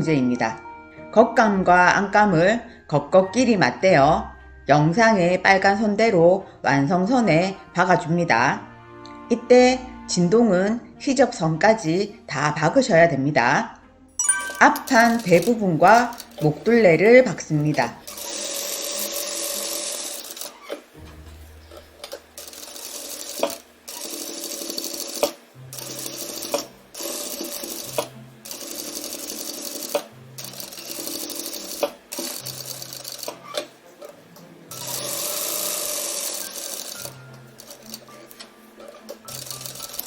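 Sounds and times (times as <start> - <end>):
background music: 0.0 - 40.0
sewing machine stitching: 14.9 - 21.1, 21.7 - 40.0.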